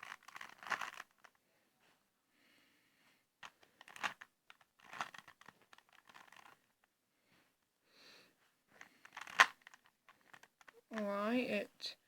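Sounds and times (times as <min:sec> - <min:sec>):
puzzle cube clicking and rattling: 0:00.0 - 0:01.4, 0:03.4 - 0:06.7, 0:08.8 - 0:11.1.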